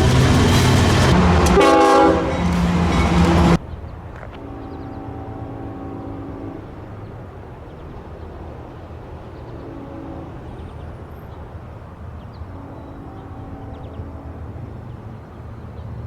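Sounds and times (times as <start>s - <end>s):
locomotive horn blasts: 0.0s - 3.6s, 4.3s - 7.4s, 9.2s - 11.1s, 12.4s - 15.5s
low train rumble: 0.0s - 16.0s.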